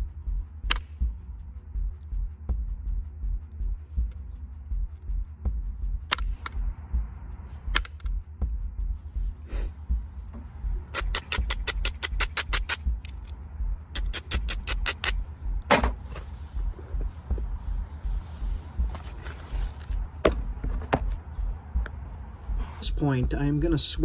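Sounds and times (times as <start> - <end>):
background music with low beat: 0.0 - 24.0
rapid high ticks: 0.2 - 15.7.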